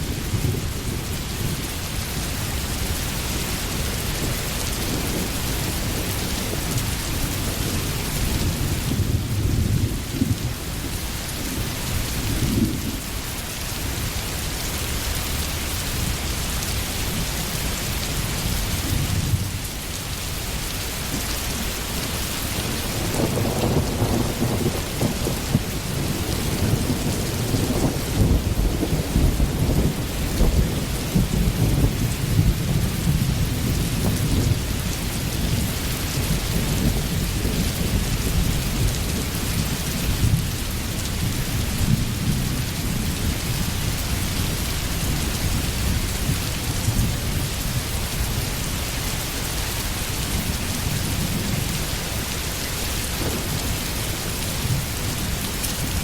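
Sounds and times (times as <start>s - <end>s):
steady rain: 0.0s - 56.0s
rolling thunder rumble: 21.0s - 48.5s, 49.9s - 56.0s.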